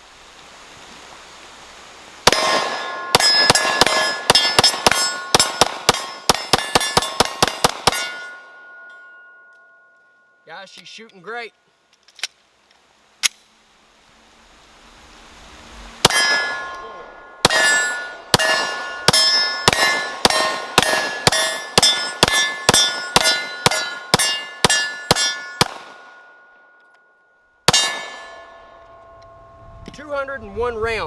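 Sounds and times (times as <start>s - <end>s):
pistol shots: 2.2s - 8.4s, 17.4s - 26.2s
steel target ringing: 2.3s - 10.5s, 16.0s - 29.7s.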